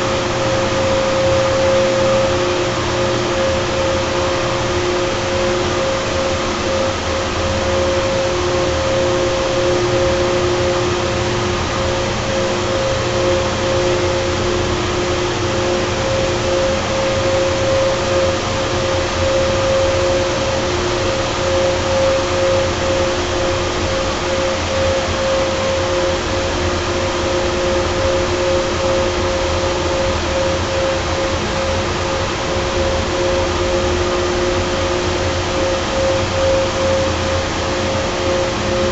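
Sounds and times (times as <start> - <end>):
chiller compressors whining: 0.0 - 38.9.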